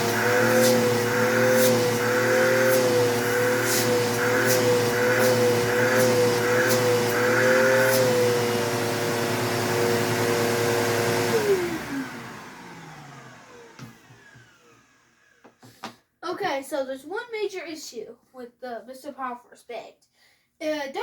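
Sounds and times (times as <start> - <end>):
vacuum cleaner motor humming: 0.0 - 15.6.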